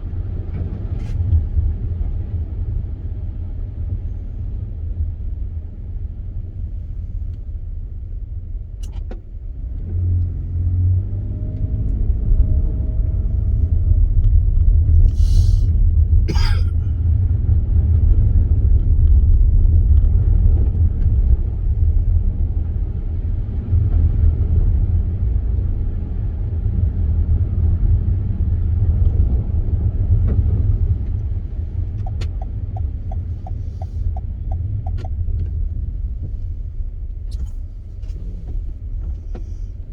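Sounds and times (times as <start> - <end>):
car driving on snow: 0.0 - 39.9
short hissing sounds: 15.1 - 15.7.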